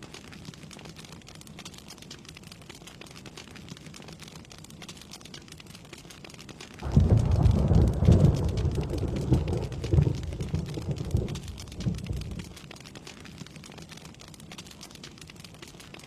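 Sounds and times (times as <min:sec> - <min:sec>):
steady rain: 0:00.0 - 0:16.0
thunder rumbling: 0:06.8 - 0:12.6.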